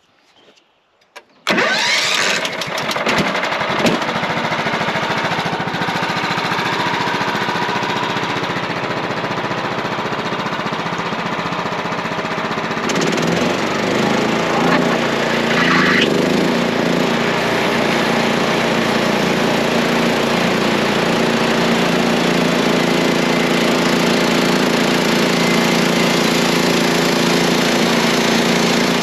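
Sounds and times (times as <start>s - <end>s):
sawmill engine running: 1.5s - 29.0s
band blade cutting log: 13.0s - 16.3s.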